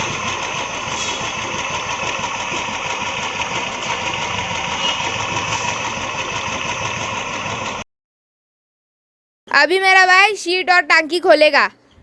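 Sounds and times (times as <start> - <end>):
abnormal engine noise: 0.0 - 7.8
motorcycle engine idling: 0.0 - 7.8.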